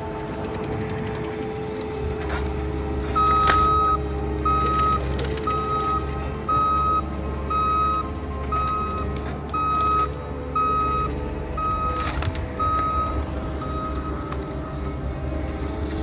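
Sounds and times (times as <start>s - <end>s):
diesel engine running: 0.0s - 16.0s
backup alarm beeping: 3.1s - 14.8s.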